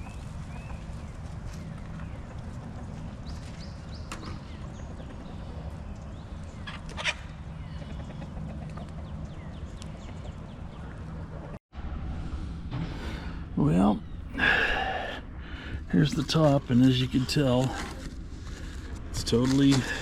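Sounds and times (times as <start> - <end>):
steady low rumble: 0.0 - 20.0
hens clucking: 4.2 - 11.6.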